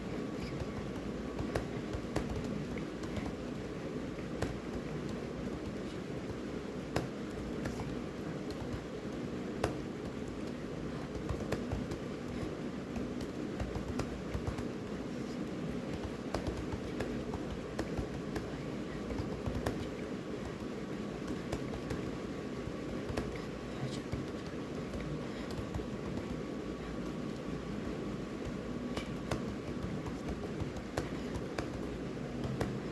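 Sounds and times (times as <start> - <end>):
low background hum: 0.0 - 32.9.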